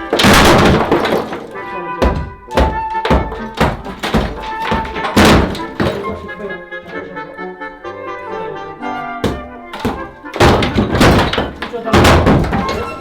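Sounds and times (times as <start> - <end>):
heavy knocks: 0.0 - 6.4, 9.2 - 13.0
brass-like music melody: 1.3 - 11.0.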